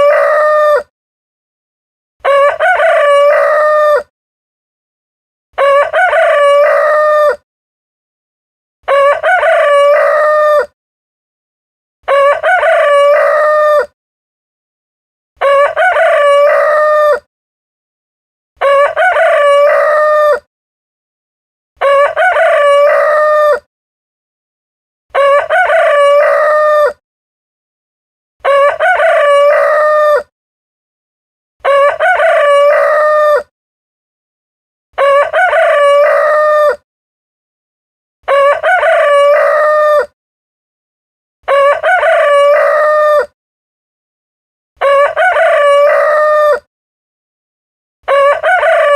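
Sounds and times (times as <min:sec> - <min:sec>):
rooster crowing: 0:00.0 - 0:00.9, 0:02.2 - 0:04.1, 0:05.6 - 0:07.4, 0:08.9 - 0:10.7, 0:12.1 - 0:13.9, 0:15.4 - 0:17.3, 0:18.6 - 0:20.5, 0:21.8 - 0:23.7, 0:25.1 - 0:27.0, 0:28.4 - 0:30.3, 0:31.6 - 0:33.5, 0:35.0 - 0:36.8, 0:38.3 - 0:40.1, 0:41.5 - 0:43.4, 0:44.8 - 0:46.7, 0:48.1 - 0:48.9.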